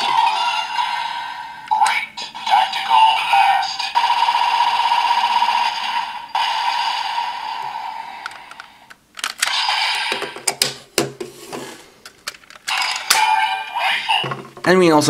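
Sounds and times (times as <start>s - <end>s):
toy electronic sound effect: 0.0s - 4.0s, 9.4s - 10.5s, 12.7s - 14.3s.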